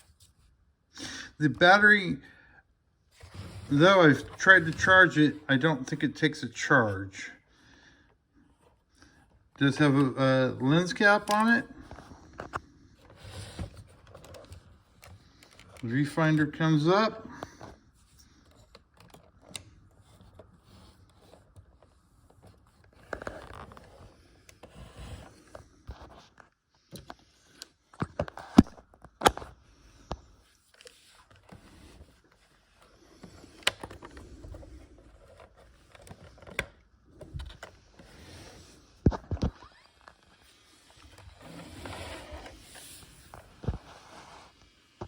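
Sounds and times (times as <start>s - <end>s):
rustling and scraping: 30.3s - 45.0s.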